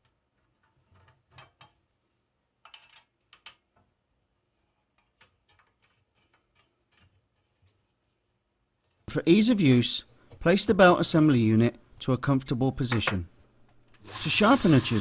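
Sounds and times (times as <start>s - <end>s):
metal parts clicking and knocking: 2.6s - 3.7s.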